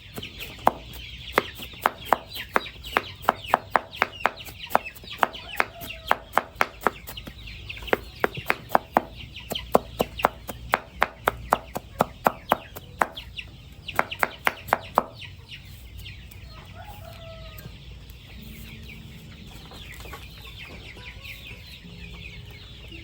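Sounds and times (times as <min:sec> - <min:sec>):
chickens clucking: 0:00.0 - 0:23.0
chopping knocks: 0:00.2 - 0:13.3, 0:13.9 - 0:15.2
high falling peeps: 0:18.2 - 0:23.0.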